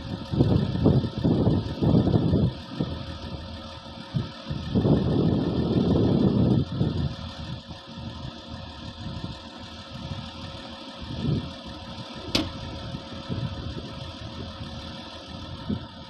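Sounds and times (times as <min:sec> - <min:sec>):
bulldozer diesel engine idling: 0:00.0 - 0:16.0
sharp click: 0:12.2 - 0:12.6.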